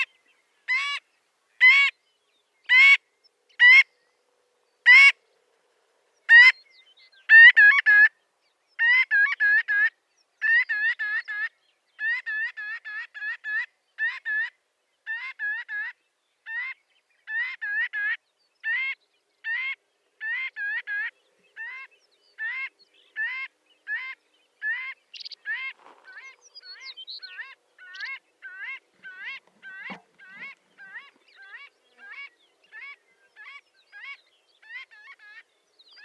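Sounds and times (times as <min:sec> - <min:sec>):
shorebird calling: 0:19.5 - 0:35.4.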